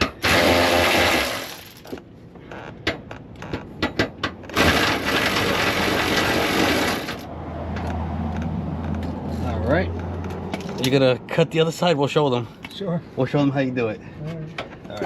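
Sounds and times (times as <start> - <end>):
power ratchet whirring: 0.0 - 2.0, 4.5 - 7.3.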